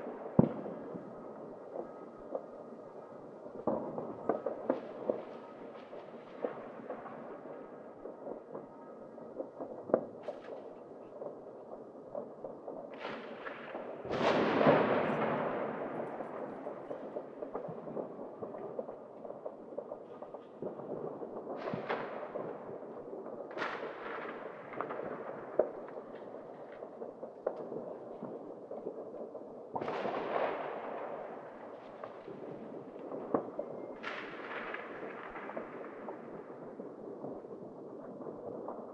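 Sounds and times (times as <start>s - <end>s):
distant firework bangs and crackles: 0.0s - 38.9s
big firework booms: 13.0s - 18.8s.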